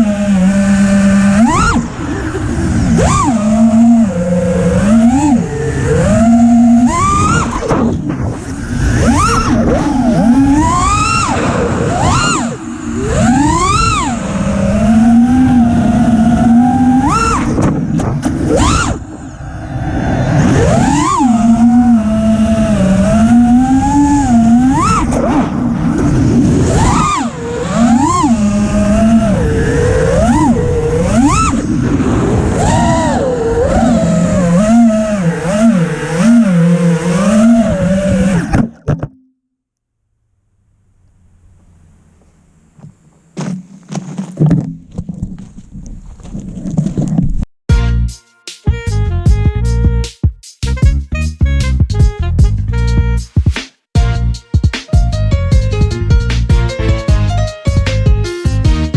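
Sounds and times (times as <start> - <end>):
drone motors whining: 0.0 - 39.1
short blips: 1.0 - 19.2, 20.4 - 39.4.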